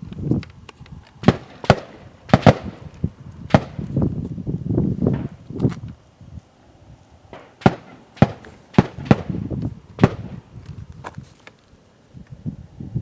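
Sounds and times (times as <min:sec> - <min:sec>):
gunshots: 0:01.2 - 0:02.9, 0:03.5 - 0:03.8, 0:07.4 - 0:10.5.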